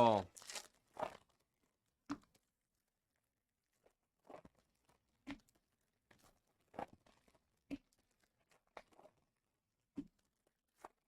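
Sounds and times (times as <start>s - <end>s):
wrappers crinkling and tearing: 0.3s - 1.3s.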